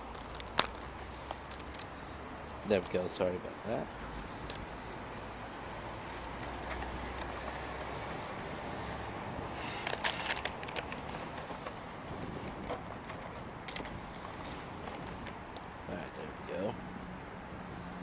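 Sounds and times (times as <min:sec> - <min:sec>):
plastic pack clicking and crackling: 0:00.0 - 0:01.9, 0:06.2 - 0:15.7.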